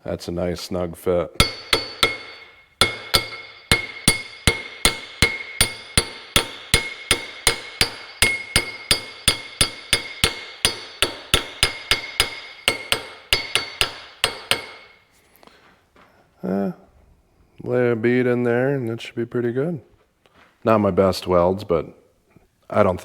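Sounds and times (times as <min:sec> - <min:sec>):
hammer striking steel: 0:01.4 - 0:15.0.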